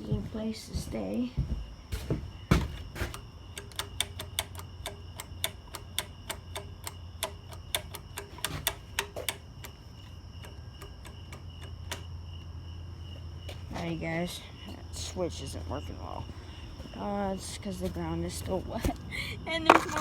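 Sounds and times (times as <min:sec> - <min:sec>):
insects trilling: 0:00.0 - 0:20.0
switch clicking: 0:03.1 - 0:09.8.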